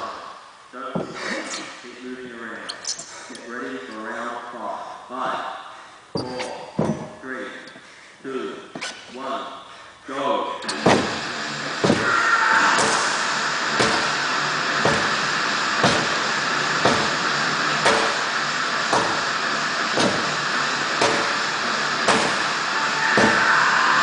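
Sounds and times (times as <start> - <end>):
sledgehammer strikes: 10.7 - 11.2, 11.8 - 24.0.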